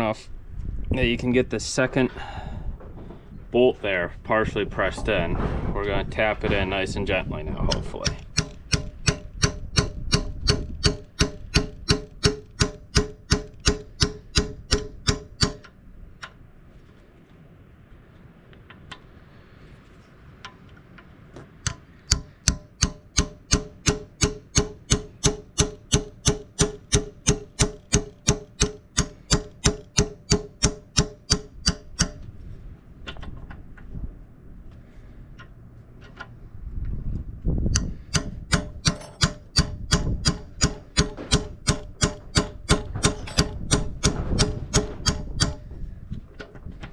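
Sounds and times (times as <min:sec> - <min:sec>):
hammer striking metal pin: 0:07.7 - 0:15.8, 0:21.7 - 0:32.3, 0:37.7 - 0:45.7.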